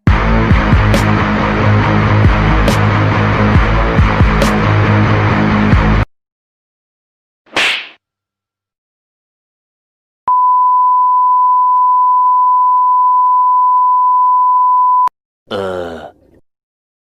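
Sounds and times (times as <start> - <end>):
high-pitched censor beep: 10.3 - 15.1.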